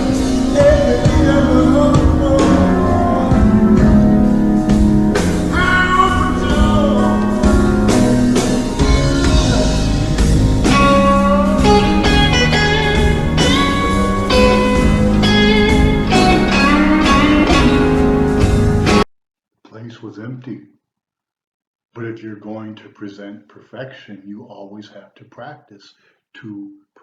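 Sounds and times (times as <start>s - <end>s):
electric blues guitar lead: 0.0s - 19.0s
bass and drums: 0.0s - 19.1s.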